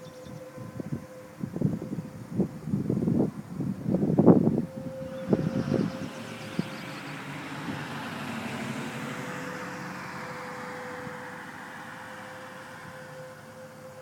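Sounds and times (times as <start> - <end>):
distant warning siren: 0.0 - 14.0
car passing: 4.0 - 14.0.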